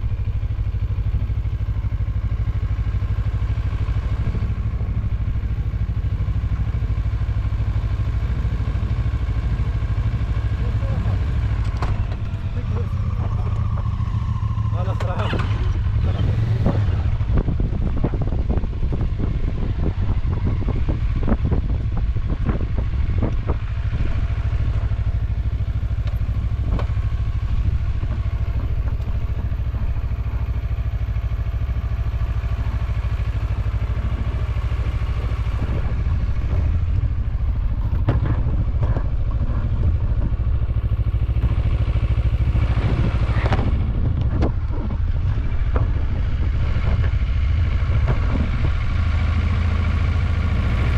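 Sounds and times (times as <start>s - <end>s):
vehicle engine running: 0.0s - 50.9s
knocks and rattles on bumpy track: 10.4s - 50.9s.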